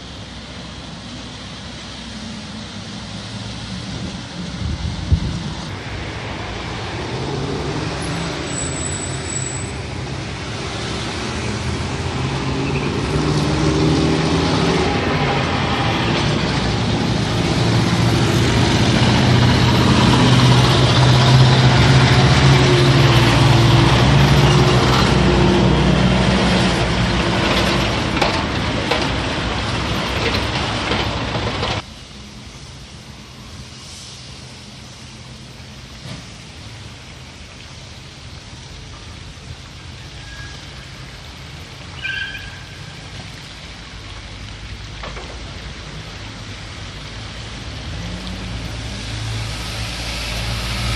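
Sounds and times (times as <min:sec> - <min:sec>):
water flowing: 0:00.0 - 0:50.9
heavy vehicle engine running: 0:09.9 - 0:33.7.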